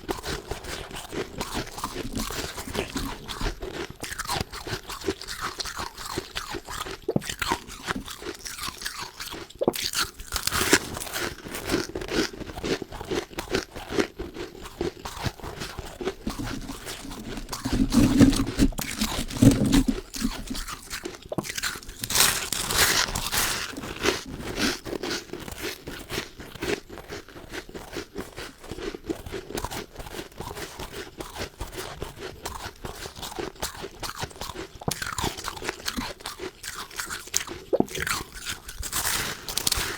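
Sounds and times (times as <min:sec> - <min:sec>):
person chewing crunchy frost: 0:00.0 - 0:39.9.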